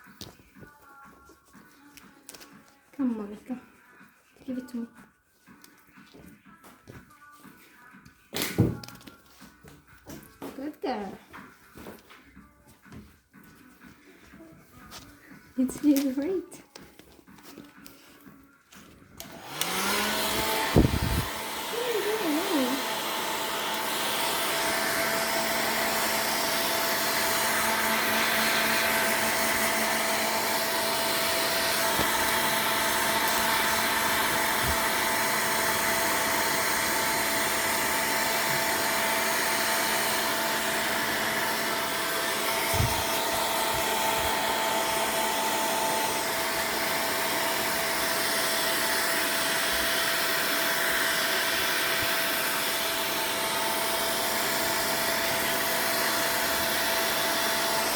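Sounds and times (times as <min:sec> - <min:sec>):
hair dryer blowing: 0:19.1 - 0:57.9.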